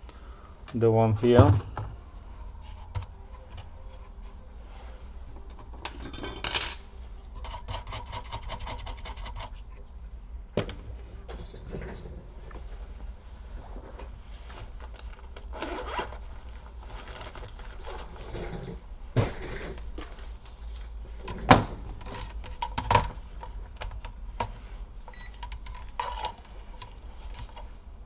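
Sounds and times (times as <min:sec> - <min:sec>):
plastic scraping and rubbing: 0:13.7 - 0:18.8.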